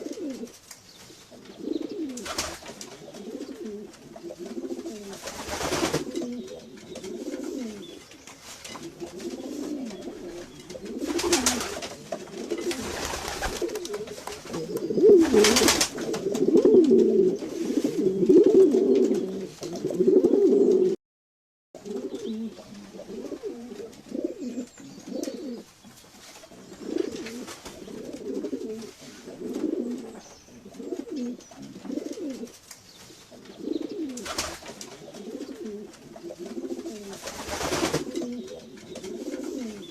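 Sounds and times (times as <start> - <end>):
pigeons cooing: 0.0 - 21.0, 21.8 - 25.7, 26.5 - 39.9.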